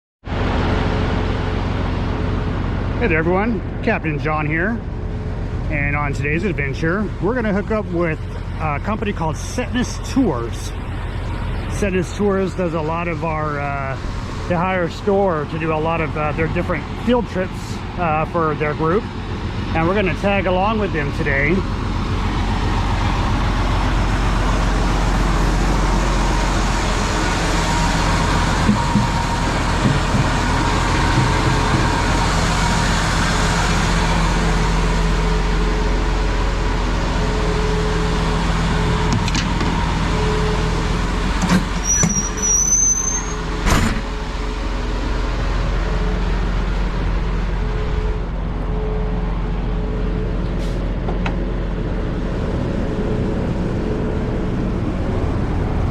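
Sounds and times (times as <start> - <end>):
road noise: 0.2 - 55.9
vehicle engine rumble: 0.2 - 55.9
high rising squeal: 10.7 - 50.4.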